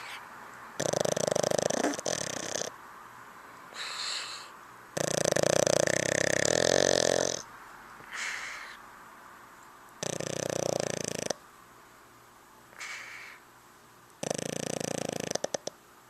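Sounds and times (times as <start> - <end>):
loud rattling snores: 0.8 - 2.8, 3.8 - 7.5, 10.0 - 11.4, 14.2 - 15.8
soft breath: 3.7 - 4.6, 8.0 - 8.8, 12.8 - 13.4.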